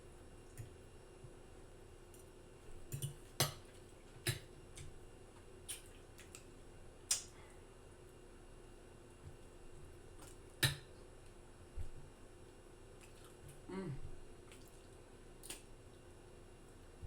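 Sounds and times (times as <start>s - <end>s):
chewing with wet mouth smacks: 5.6s - 6.5s, 13.0s - 13.7s, 14.4s - 16.0s.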